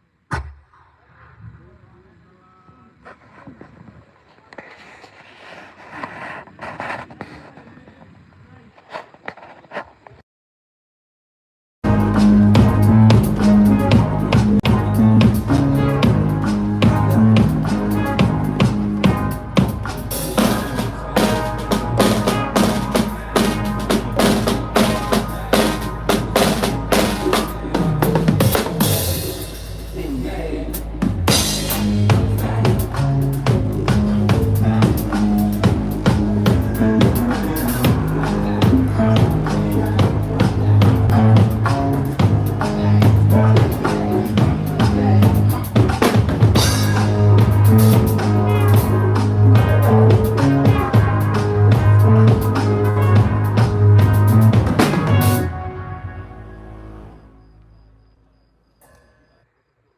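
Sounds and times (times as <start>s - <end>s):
loud drum kit beat: 11.8s - 55.6s
band music through pa system: 11.8s - 56.5s.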